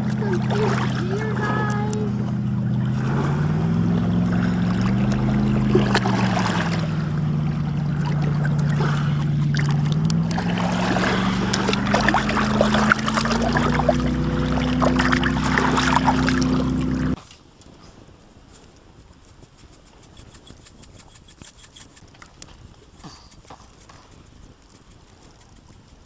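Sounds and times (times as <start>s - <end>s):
outboard motor running: 0.0s - 17.2s.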